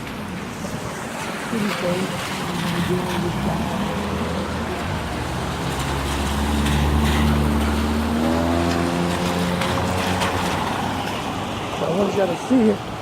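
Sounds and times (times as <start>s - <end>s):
wind: 0.0s - 13.0s
vehicle engine drone: 1.5s - 11.6s.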